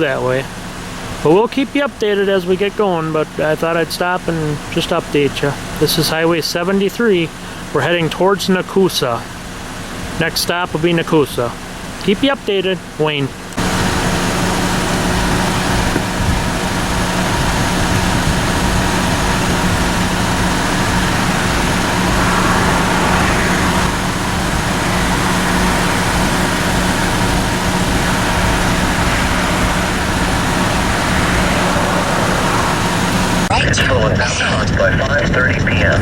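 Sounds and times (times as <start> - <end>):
car driving on highway: 11.1 - 36.0.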